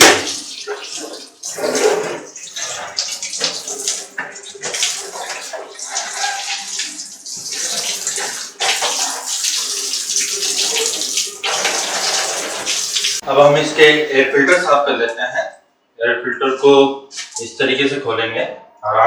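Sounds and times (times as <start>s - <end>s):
water splashing on plastic: 0.0s - 13.2s.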